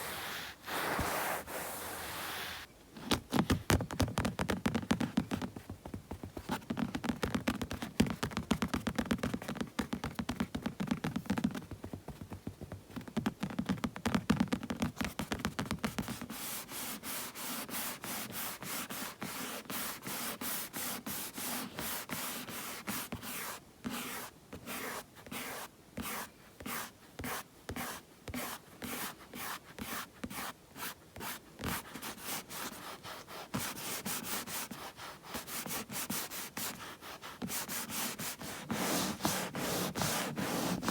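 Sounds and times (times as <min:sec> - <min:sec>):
palms rubbing together: 0:00.0 - 0:02.7, 0:37.4 - 0:40.9.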